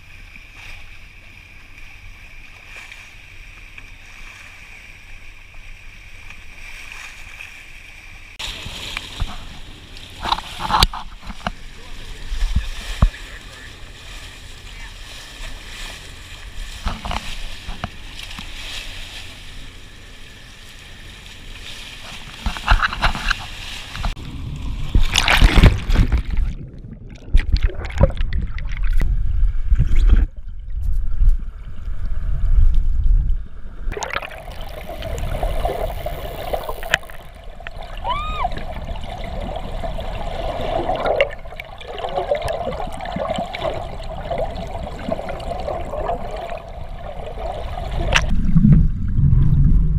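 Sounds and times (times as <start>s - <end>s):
seawater splashing and sloshing: 0.0s - 31.7s, 33.9s - 49.1s
muffled water gurgling: 8.2s - 49.9s
loud splash: 23.0s - 29.0s, 33.9s - 49.9s.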